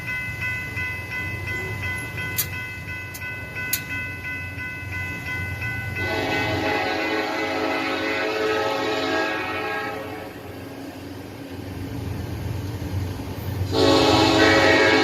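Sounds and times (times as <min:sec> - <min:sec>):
train low rumble: 0:00.0 - 0:15.0
train air horn blasts: 0:06.0 - 0:10.8, 0:13.7 - 0:15.0.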